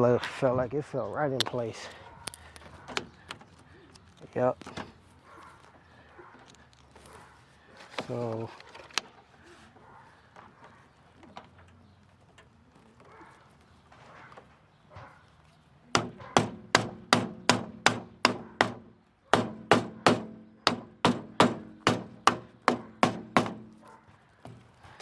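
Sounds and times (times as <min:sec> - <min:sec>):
sharp knocks on car door panel: 0:16.0 - 0:23.7.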